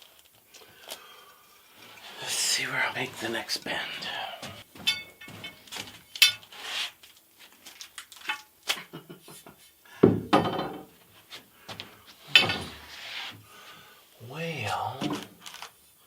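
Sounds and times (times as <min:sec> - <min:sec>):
metal conduit clinking and scraping: 0:04.5 - 0:06.8, 0:12.3 - 0:12.9.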